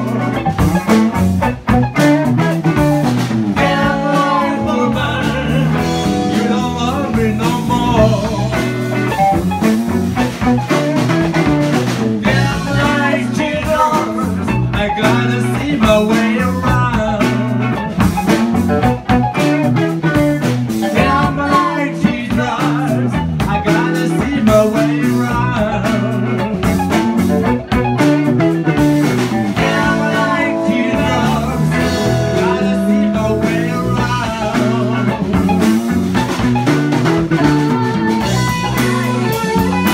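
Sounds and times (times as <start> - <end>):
electric guitar: 0.0 - 39.9
live blues-rock band playing: 0.0 - 39.9.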